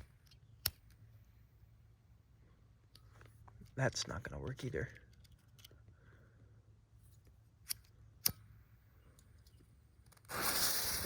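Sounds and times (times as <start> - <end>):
fuse hissing and sizzling: 10.3 - 11.0.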